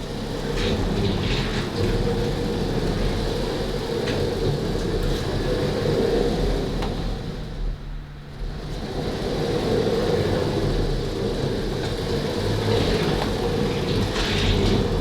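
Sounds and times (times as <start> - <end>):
gantry rolling on linear rails: 8.8 - 15.0.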